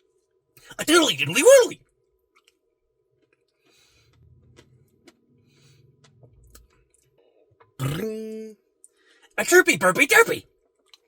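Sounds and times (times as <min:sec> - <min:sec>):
chewing ice cream: 0:01.8 - 0:08.0, 0:10.5 - 0:11.0
person humming: 0:07.9 - 0:08.5.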